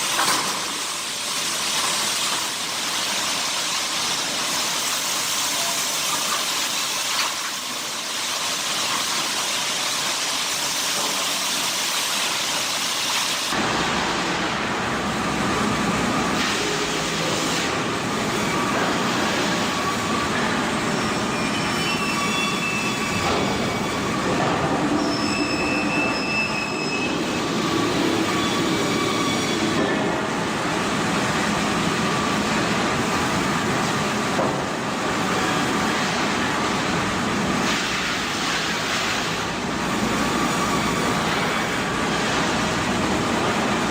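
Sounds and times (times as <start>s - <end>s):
sawmill machinery cutting wood: 32.2s - 43.7s.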